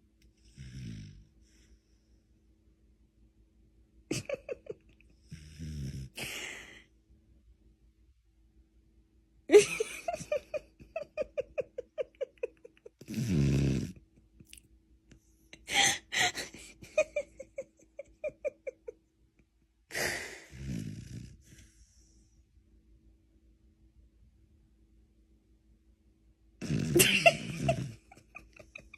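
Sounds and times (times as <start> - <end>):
dog snoring and wheezing: 0.4 - 1.7, 5.2 - 6.7, 13.0 - 14.0, 19.9 - 22.1, 26.6 - 28.1.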